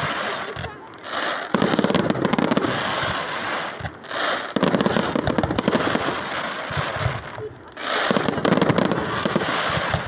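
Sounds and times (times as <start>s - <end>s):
fireworks crackling: 0.0s - 10.0s
fireworks hiss: 0.0s - 10.0s.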